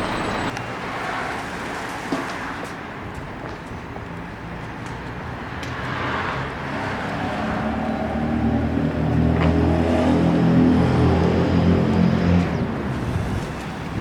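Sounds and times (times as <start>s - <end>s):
truck diesel engine drone: 0.0s - 0.6s, 7.0s - 14.0s.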